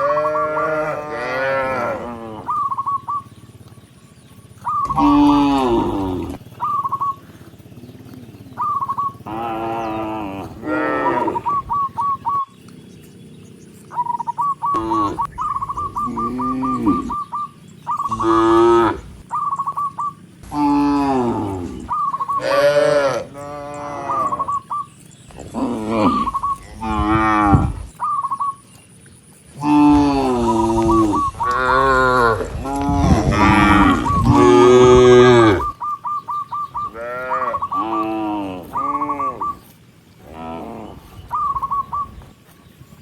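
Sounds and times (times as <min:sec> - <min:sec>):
cows mooing: 0:00.0 - 0:03.7, 0:04.4 - 0:12.4, 0:14.2 - 0:28.2, 0:29.4 - 0:42.6
high chirps: 0:02.4 - 0:40.1, 0:40.7 - 0:42.8.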